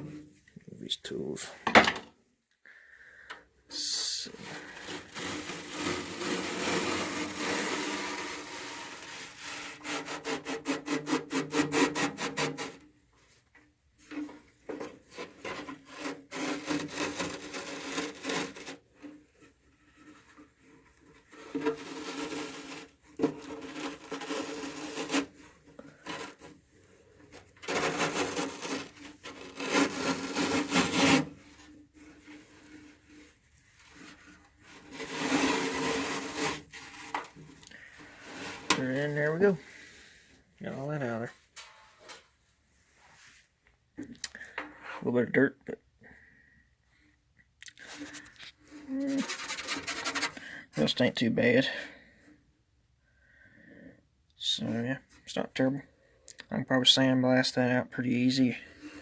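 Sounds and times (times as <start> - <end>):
scraping on steel toolbox: 4.2 - 12.9, 14.0 - 42.3, 47.9 - 51.0.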